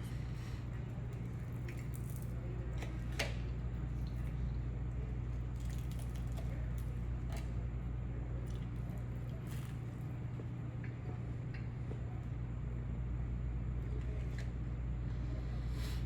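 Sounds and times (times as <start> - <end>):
wet chewing: 5.4 - 7.5.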